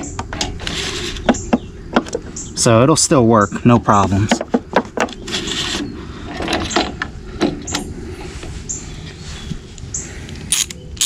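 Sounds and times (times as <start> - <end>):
metal hardware scraping rustle: 0.0 - 2.2, 5.0 - 9.5.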